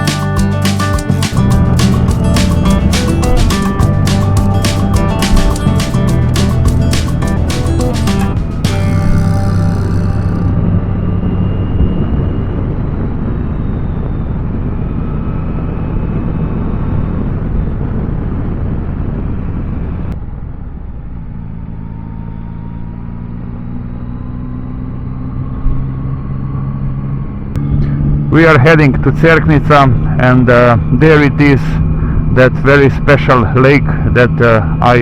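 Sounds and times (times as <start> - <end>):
motorcycle engine running: 0.0 - 11.0, 27.4 - 29.1
wind and road noise: 0.0 - 35.0.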